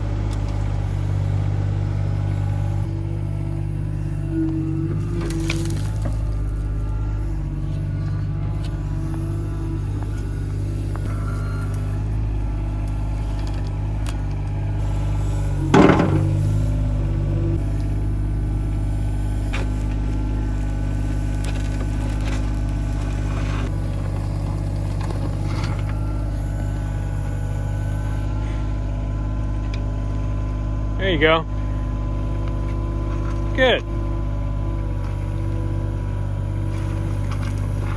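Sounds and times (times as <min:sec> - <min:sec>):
excavator diesel engine running: 0:00.0 - 0:37.9
excavator knocks: 0:15.6 - 0:16.8.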